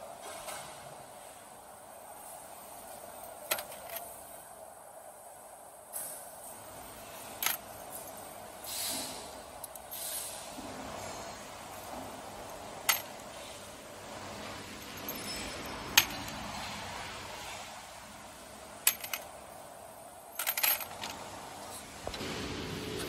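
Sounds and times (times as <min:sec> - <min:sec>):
workshop hiss: 0:00.0 - 0:23.0
nails clinking on metal: 0:03.2 - 0:04.2, 0:07.3 - 0:08.3, 0:12.5 - 0:13.4, 0:14.6 - 0:16.6, 0:18.8 - 0:19.5, 0:20.3 - 0:21.2.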